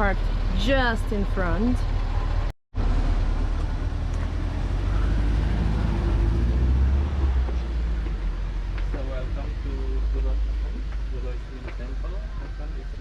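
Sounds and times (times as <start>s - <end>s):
vehicle engine idling: 0.0s - 13.0s.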